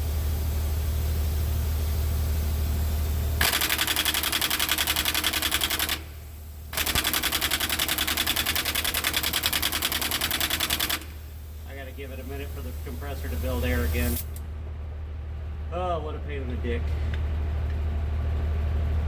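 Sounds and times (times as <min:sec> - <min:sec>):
idling truck hum: 0:00.0 - 0:19.0
air impact wrench hammering: 0:03.4 - 0:12.4.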